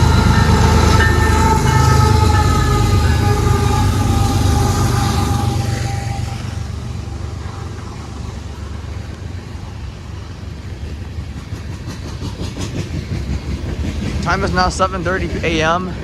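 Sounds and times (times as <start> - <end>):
train horn: 0.0 - 9.8
diesel train rumble: 0.0 - 16.0
train rolling noise: 0.0 - 16.0.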